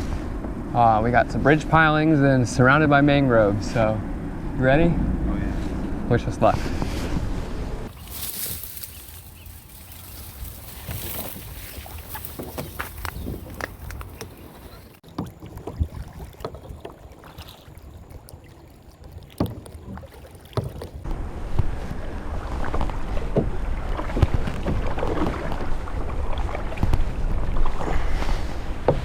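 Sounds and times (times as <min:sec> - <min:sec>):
wind rumble on microphone: 0:00.0 - 0:18.4, 0:20.9 - 0:29.0
paddle and hull splashing: 0:06.4 - 0:29.0.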